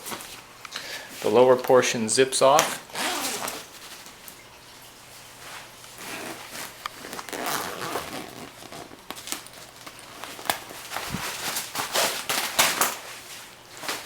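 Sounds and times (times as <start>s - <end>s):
fabric rustling: 2.6s - 4.1s, 5.4s - 14.0s.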